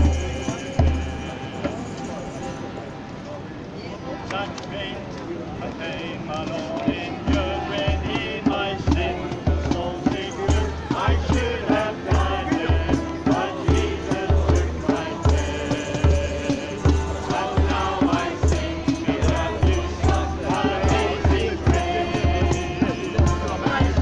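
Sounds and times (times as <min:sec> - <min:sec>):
voices singing: 0:00.0 - 0:02.7, 0:03.9 - 0:24.0
shaker-like percussion: 0:00.0 - 0:02.9, 0:05.8 - 0:24.0
hymn music with bass beat: 0:06.4 - 0:24.0.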